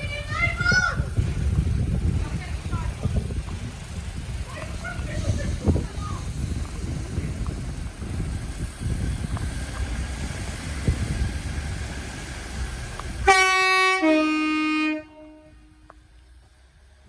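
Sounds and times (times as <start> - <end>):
low rumble: 0.0 - 17.0
train horn blast: 13.2 - 16.0.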